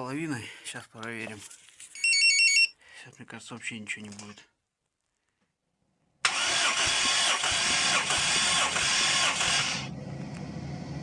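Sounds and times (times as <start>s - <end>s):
engine cranking by starter motor: 6.2s - 11.0s.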